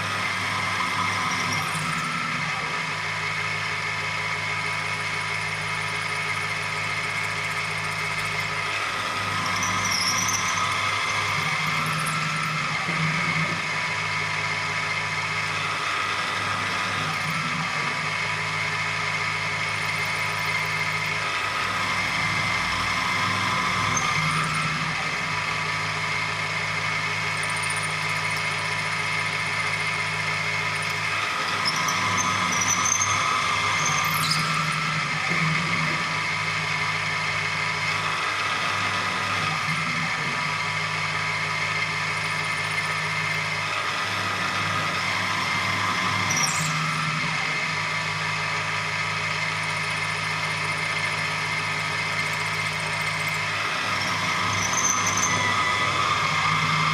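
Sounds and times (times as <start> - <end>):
milling machine motor whine: 0.0 - 56.9
high squeal: 0.4 - 2.7, 7.7 - 13.6, 19.8 - 26.0, 29.6 - 36.3, 41.8 - 47.8, 49.6 - 56.9.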